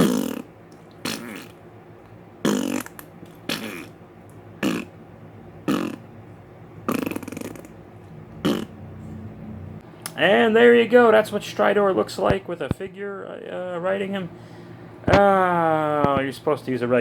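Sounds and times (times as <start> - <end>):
man making mouth fart sounds: 0.0 - 1.6, 2.4 - 4.0, 4.6 - 5.0, 5.6 - 6.1, 6.8 - 7.8, 8.4 - 8.8.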